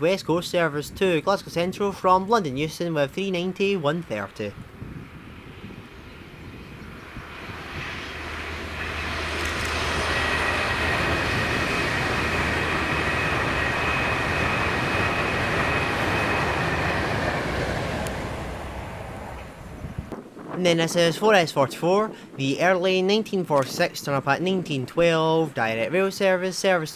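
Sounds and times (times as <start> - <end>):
electric train passing: 4.6 - 20.1.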